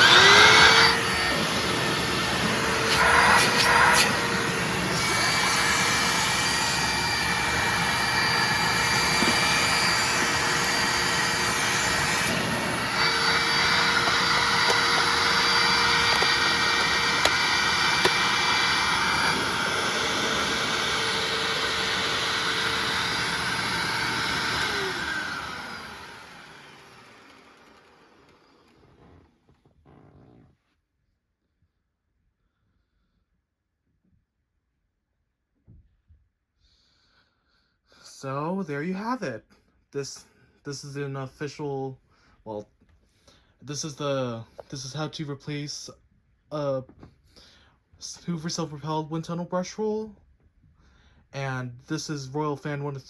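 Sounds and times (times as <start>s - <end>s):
suction rushing through hose: 0.0s - 26.8s
vacuum cleaner motor running: 0.0s - 30.3s.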